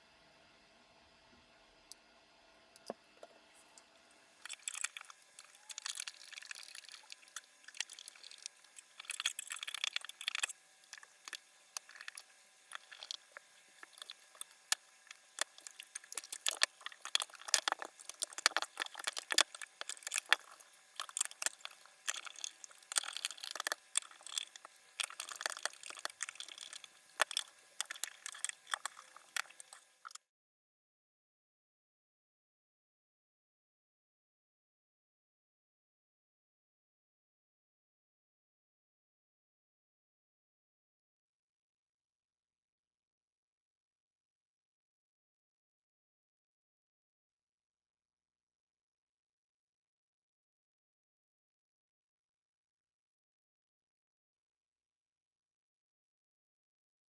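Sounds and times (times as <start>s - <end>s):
clicks and scrapes of computer parts: 4.4s - 30.2s.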